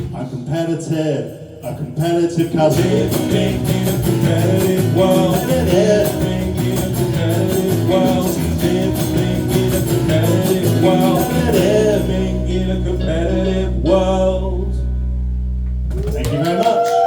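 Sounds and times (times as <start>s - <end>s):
person singing: 1.7s - 14.9s
low bass: 2.7s - 16.6s
live band playing: 2.8s - 12.2s.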